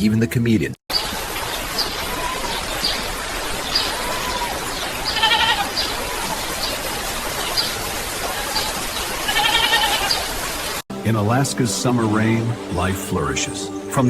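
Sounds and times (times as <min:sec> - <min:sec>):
small birds chirping: 0:00.9 - 0:10.3
rain hiss: 0:00.9 - 0:10.8
bleat-like animal call: 0:03.9 - 0:05.8, 0:09.3 - 0:10.2.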